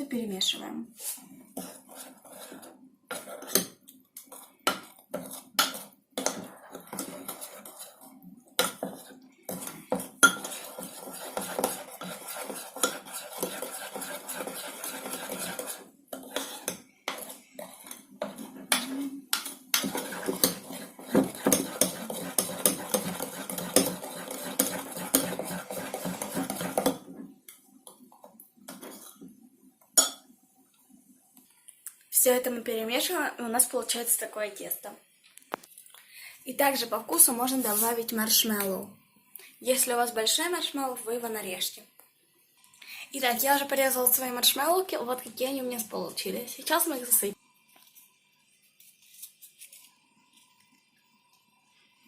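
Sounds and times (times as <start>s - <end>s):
spoon stirring batter in dish: 1.2s - 30.3s.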